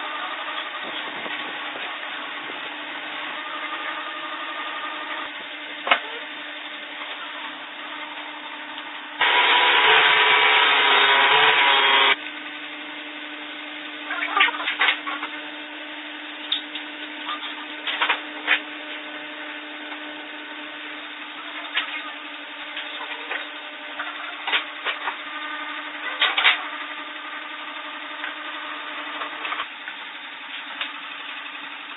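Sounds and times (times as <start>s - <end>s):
power tool humming: 0.0s - 14.2s
loud burst of noise: 9.2s - 12.2s.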